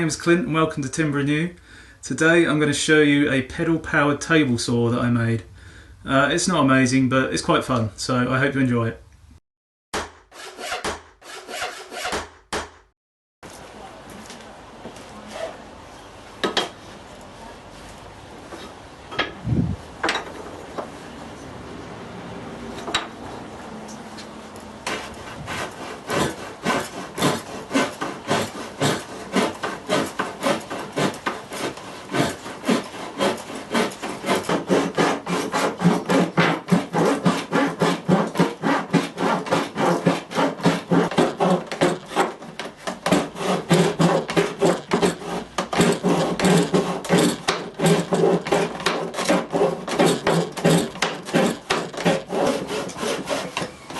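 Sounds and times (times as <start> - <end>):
saw rasping through wood: 10.0 - 12.7, 24.8 - 53.9.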